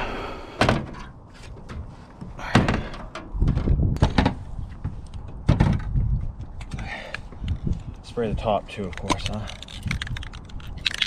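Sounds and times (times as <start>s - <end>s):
knocks and heavy thumps on van roof: 1.6s - 6.4s.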